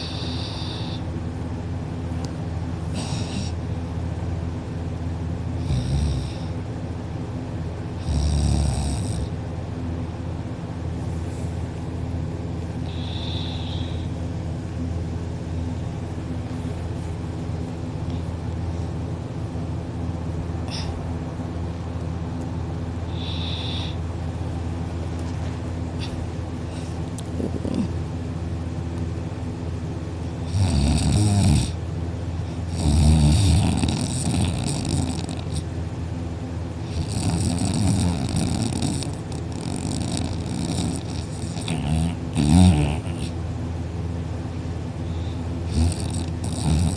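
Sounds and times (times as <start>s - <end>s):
person snoring: 0.0s - 1.1s, 5.6s - 6.5s, 12.8s - 14.2s, 23.1s - 24.0s, 30.5s - 31.8s, 32.7s - 35.6s, 36.9s - 43.4s, 45.7s - 46.9s
low droning hum: 0.0s - 46.9s.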